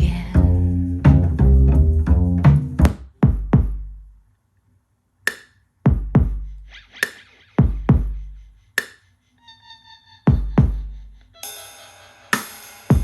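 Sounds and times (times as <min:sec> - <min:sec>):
deep kick drum hits: 0:02.8 - 0:03.8, 0:05.9 - 0:06.4
sharp snare hits: 0:05.3 - 0:05.6.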